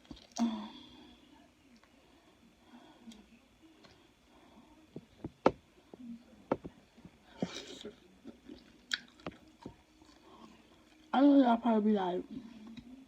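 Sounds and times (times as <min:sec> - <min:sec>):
close chewing with mouth clicks: 0:07.4 - 0:11.1.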